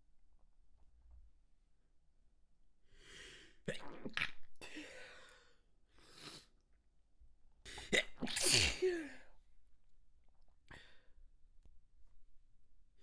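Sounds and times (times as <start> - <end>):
stifled sneezes: 7.7 - 9.2.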